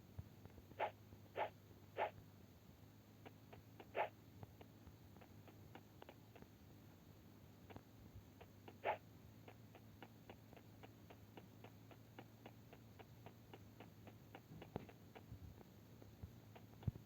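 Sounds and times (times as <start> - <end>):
faint regular ticking: 3.2 - 6.7, 7.6 - 17.0.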